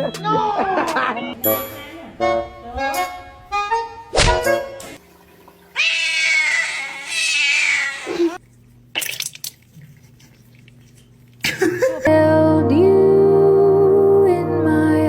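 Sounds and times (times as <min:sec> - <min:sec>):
cat yowling: 0:05.8 - 0:08.4.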